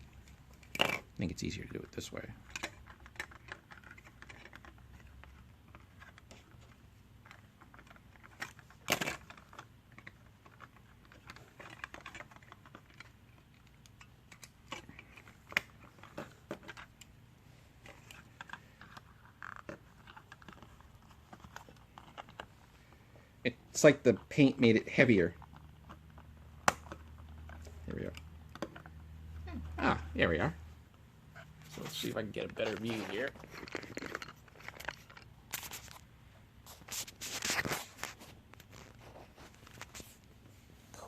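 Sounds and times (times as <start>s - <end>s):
plastic parts clicking: 2.4s - 17.1s.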